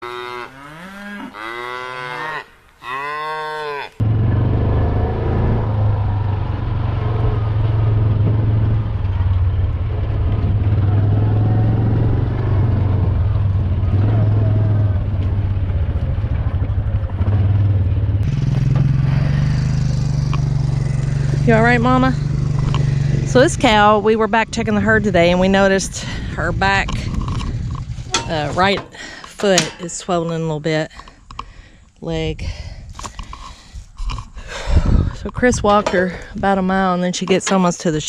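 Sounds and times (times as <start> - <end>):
cattle mooing: 0.0 - 4.0
vehicle engine running: 4.0 - 30.6.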